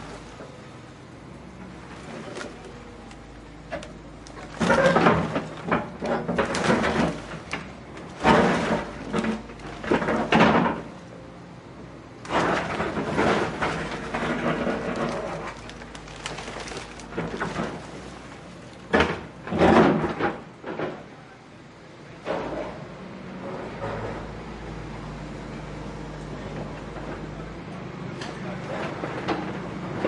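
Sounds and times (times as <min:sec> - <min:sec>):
house demolition crashing and scraping: 0:04.4 - 0:11.0, 0:12.3 - 0:21.1.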